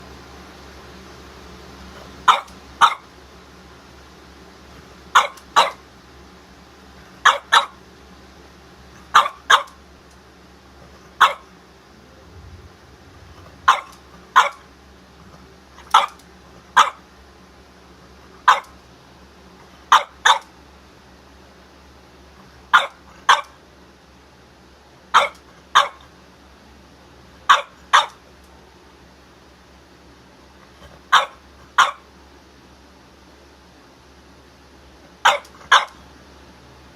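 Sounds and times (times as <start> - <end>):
dog barking: 2.2 - 3.1, 5.1 - 5.8, 7.2 - 7.8, 9.1 - 9.8, 11.2 - 11.5, 13.5 - 14.7, 15.9 - 17.0, 18.4 - 18.8, 19.9 - 20.5, 22.7 - 23.6, 25.1 - 26.1, 27.5 - 28.2, 30.9 - 32.1, 35.2 - 36.0.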